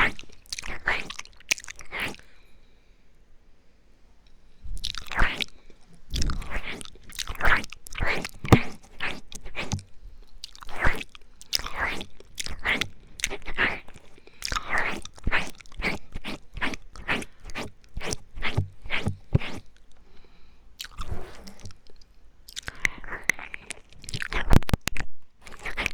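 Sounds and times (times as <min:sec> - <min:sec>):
mouth sucking noises: 0:10.5 - 0:19.7, 0:20.8 - 0:21.9
tongue clicks: 0:20.8 - 0:25.9
wet lip smacks: 0:20.8 - 0:25.9.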